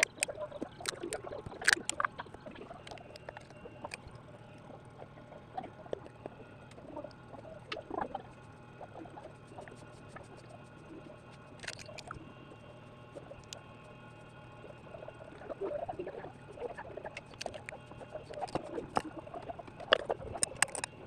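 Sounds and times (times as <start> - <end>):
small tools clicking on phone parts: 0.0 - 4.1, 11.6 - 12.2, 17.1 - 21.0.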